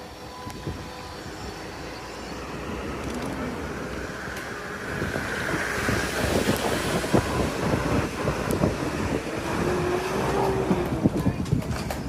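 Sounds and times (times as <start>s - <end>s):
train wheels rumbling on rails: 0.0s - 12.0s
train clattering: 2.9s - 12.0s.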